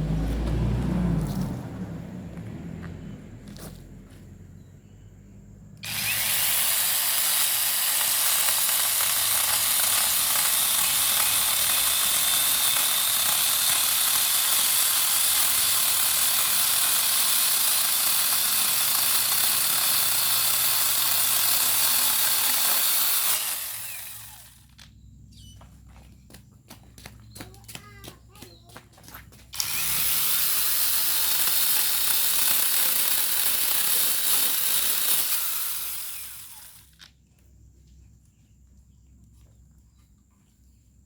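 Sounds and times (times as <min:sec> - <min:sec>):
chainsaw grinder cutting wood: 0:05.8 - 0:24.8, 0:29.6 - 0:37.0.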